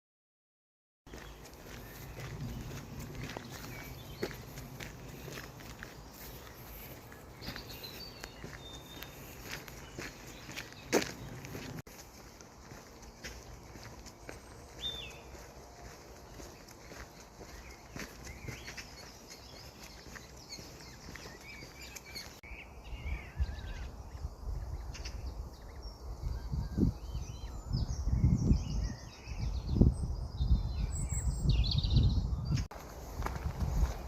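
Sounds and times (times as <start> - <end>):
distant motorway traffic: 1.1 - 22.4, 32.8 - 34.0
small birds chirping: 1.1 - 34.0.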